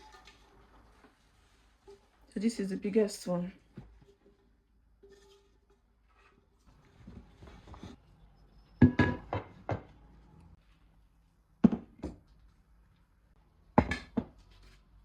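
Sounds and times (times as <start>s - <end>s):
pots and lids knocking: 8.8s - 9.9s.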